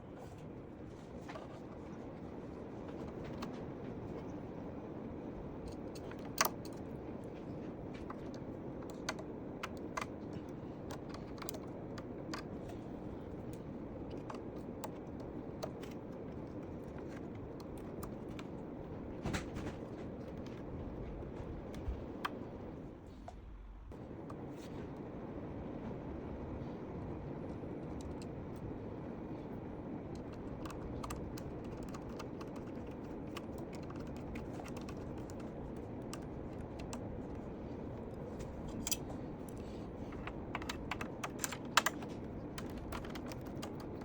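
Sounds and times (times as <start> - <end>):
steady low hum: 0.0 - 44.0
small parts clicking and tapping: 5.6 - 18.6, 30.1 - 44.0.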